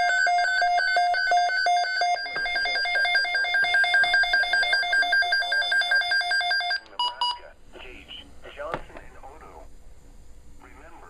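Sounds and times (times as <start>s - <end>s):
electronic two-tone warble alarm: 0.0s - 7.4s.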